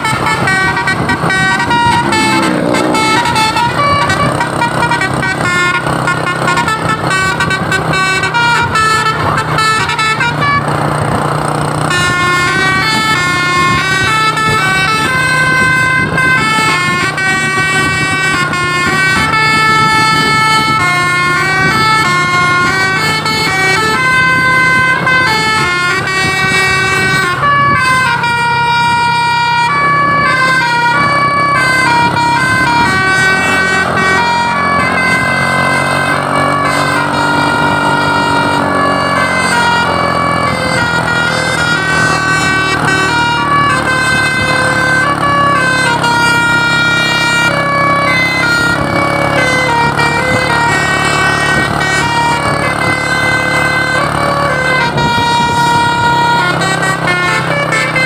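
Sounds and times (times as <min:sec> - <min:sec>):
engine drone: 0:00.0 - 0:58.0
musical bus horn tunes: 0:00.0 - 0:58.0.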